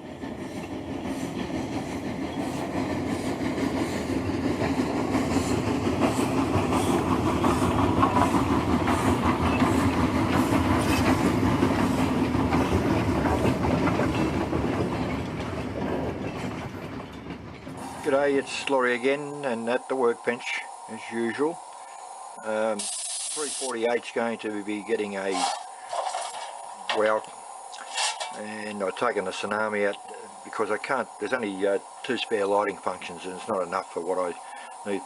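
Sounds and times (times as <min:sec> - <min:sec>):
train clickety-clack on rails: 0:00.0 - 0:18.8.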